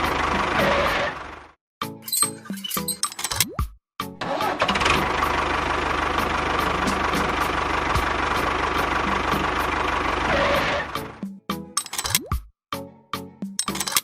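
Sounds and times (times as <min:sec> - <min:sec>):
motor running: 0:04.5 - 0:11.2.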